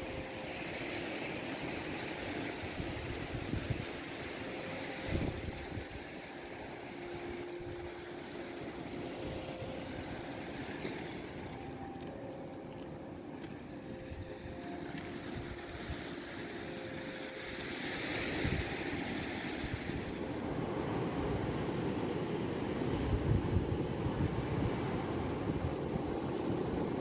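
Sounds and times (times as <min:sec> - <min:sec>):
waves washing onto shore: 0:00.0 - 0:27.0
wind buffeting microphone: 0:01.4 - 0:06.2, 0:18.1 - 0:27.0.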